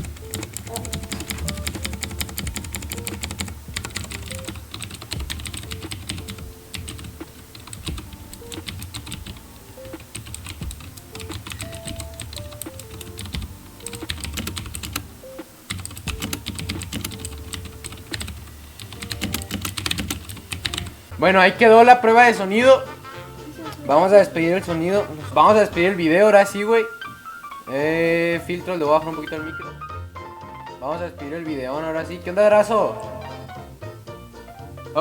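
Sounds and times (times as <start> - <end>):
clicky keyboard typing: 0.0 - 15.0, 15.7 - 20.9
quiet background music melody: 0.0 - 35.0.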